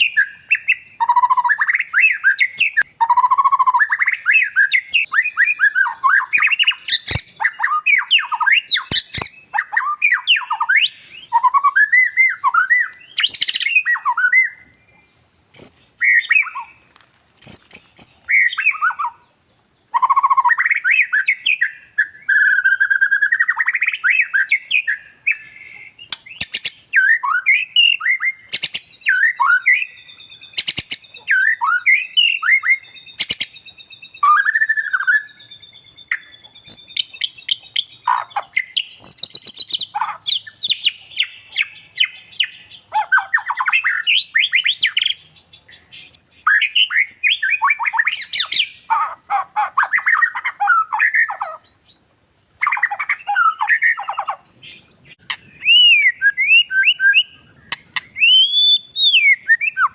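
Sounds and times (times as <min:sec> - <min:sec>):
songbird singing: 0:00.0 - 0:59.9
sharp clicks: 0:08.9 - 0:09.4.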